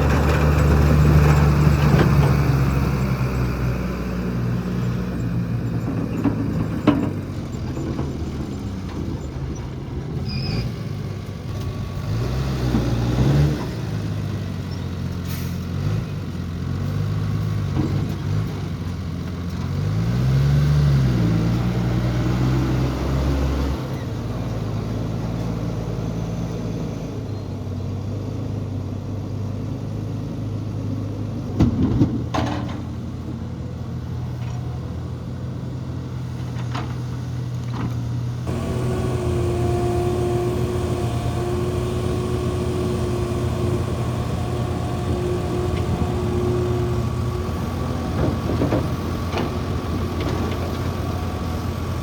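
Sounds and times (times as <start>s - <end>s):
diesel engine running: 0.0s - 16.9s, 21.6s - 52.0s.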